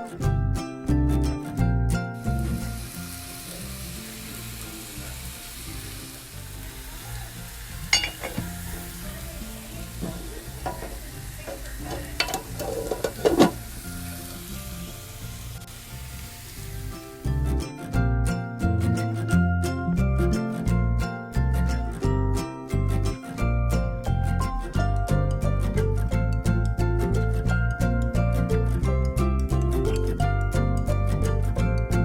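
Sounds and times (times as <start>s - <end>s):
soft background music: 0.0s - 32.0s
food sizzling in a frying pan: 2.2s - 17.8s.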